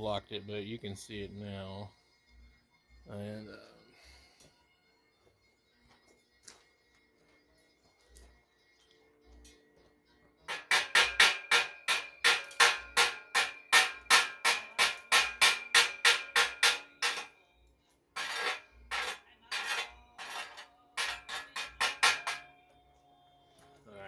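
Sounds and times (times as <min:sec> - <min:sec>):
hammer striking steel: 0:10.5 - 0:17.4, 0:18.2 - 0:22.7.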